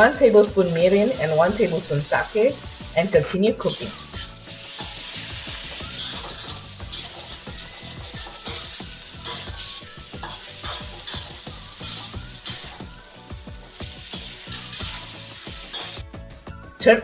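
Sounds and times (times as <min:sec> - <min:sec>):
food sizzling in hot oil: 0:00.0 - 0:16.6
stirring knocks and scrapes in pan: 0:04.1 - 0:16.3.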